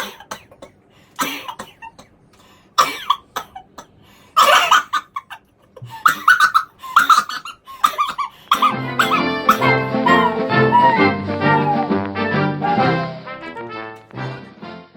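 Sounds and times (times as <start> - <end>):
person coughing: 0.0 - 2.1, 2.8 - 11.8.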